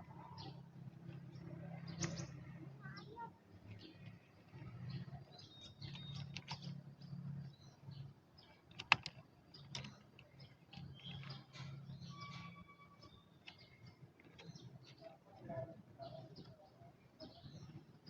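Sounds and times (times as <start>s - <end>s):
birds chirping: 0.0s - 18.0s.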